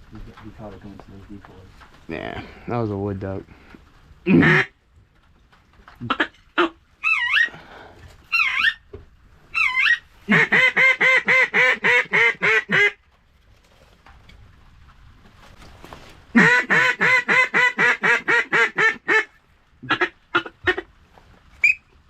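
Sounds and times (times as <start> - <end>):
duck quacking: 4.3 - 4.7, 9.6 - 13.0, 16.4 - 20.9
duck whistled squeals: 7.0 - 7.5, 9.6 - 10.0, 21.6 - 21.9.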